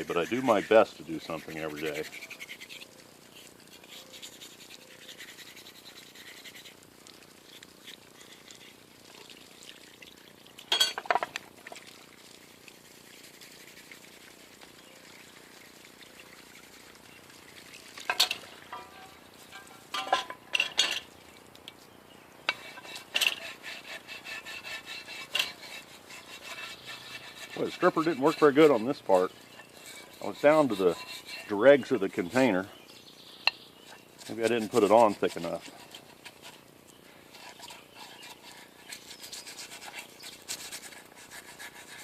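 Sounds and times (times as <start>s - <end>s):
metal tool scraping metal parts: 18.1s - 21.1s, 22.5s - 32.5s.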